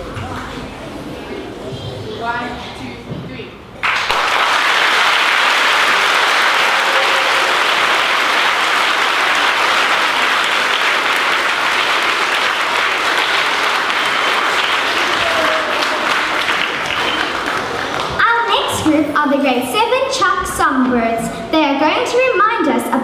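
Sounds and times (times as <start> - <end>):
audience clapping: 3.8 - 18.3.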